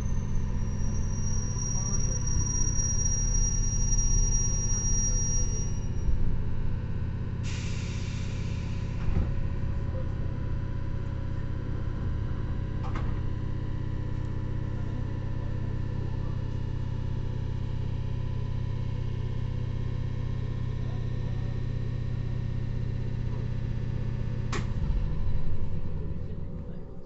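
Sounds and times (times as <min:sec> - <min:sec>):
high-pitched brake squeal: 0:00.0 - 0:06.1
steady low hum: 0:20.9 - 0:27.0.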